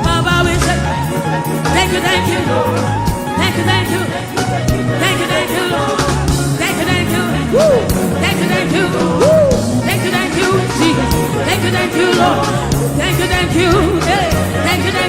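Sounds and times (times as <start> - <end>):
gospel band with singing: 0.0 - 15.0.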